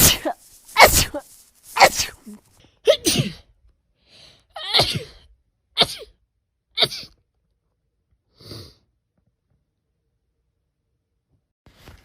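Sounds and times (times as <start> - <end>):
woman sneezing: 0.0 - 3.4.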